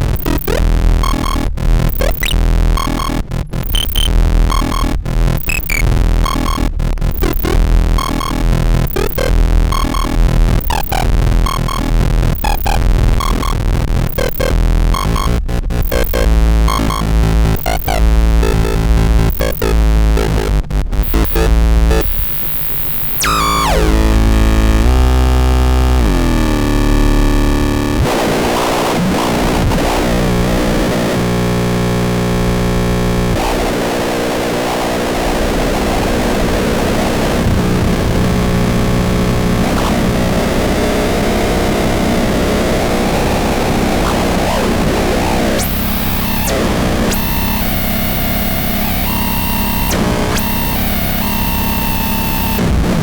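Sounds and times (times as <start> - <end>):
pulsing heavy bass: 0.0 - 28.1
distorted synthesized tones: 0.0 - 53.0
layered drones and noise: 38.9 - 52.9
falling synth sweep: 43.2 - 52.6.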